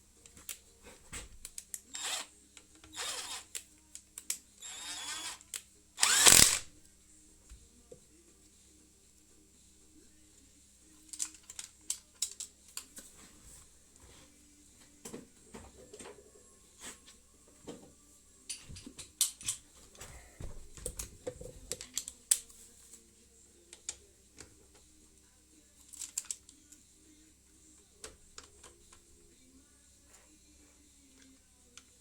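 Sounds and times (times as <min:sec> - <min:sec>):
metal tools clicking and tapping: 0:11.1 - 0:13.1, 0:18.5 - 0:19.7, 0:20.8 - 0:22.5.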